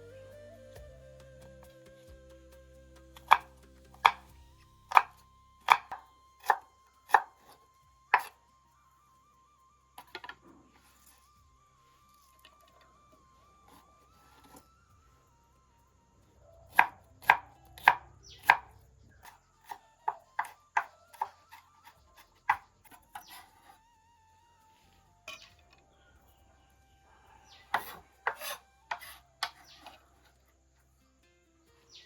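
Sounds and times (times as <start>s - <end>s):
knife chopping on cutting board: 27.8s - 29.6s.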